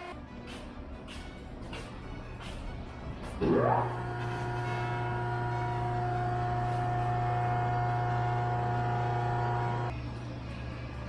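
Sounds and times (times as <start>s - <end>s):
machinery electric hum: 3.4s - 11.0s.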